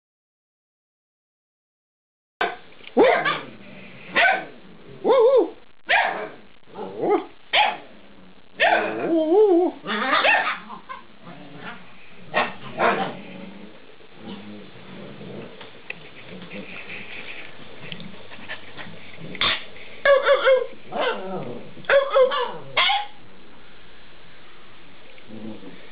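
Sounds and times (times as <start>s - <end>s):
puppies barking and yipping: 9.8s - 11.1s, 16.0s - 21.2s, 21.9s - 23.2s.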